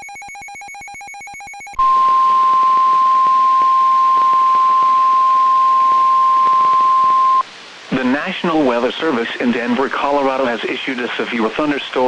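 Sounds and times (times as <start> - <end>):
steady warning tone: 0.0 - 7.4
warbling electronic alarm: 0.0 - 7.4.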